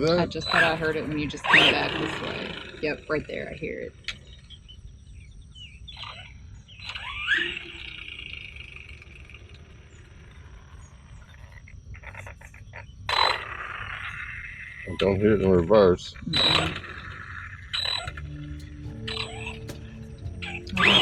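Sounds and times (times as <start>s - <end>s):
electric motor whine: 17.6s - 21.0s.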